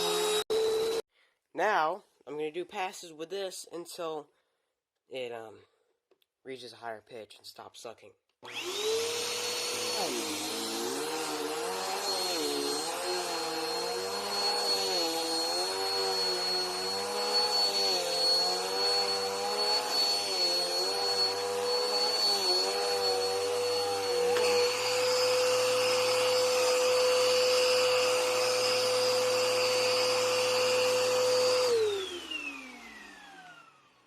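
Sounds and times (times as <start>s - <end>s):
upright vacuum running over carpet: 0.0s - 1.0s, 8.4s - 34.0s.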